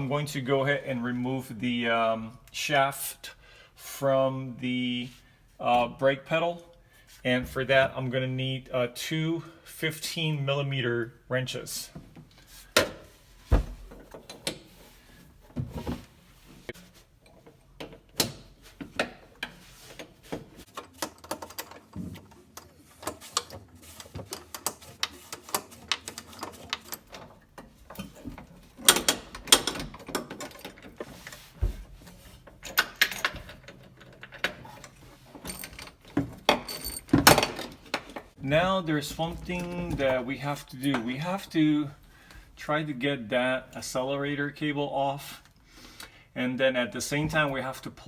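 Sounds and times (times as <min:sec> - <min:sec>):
wrenches clinking on metal: 0:20.7 - 0:31.5, 0:32.4 - 0:38.3.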